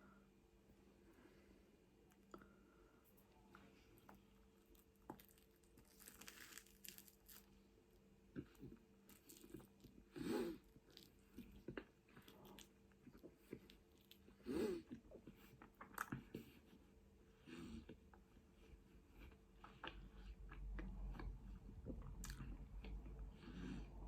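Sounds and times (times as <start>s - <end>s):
soft crunches: 4.0s - 7.5s
faint chewing: 8.3s - 17.0s, 17.7s - 23.9s.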